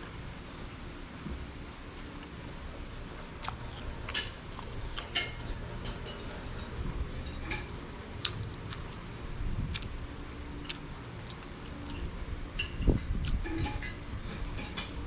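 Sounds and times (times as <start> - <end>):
person chewing: 3.3 - 12.1.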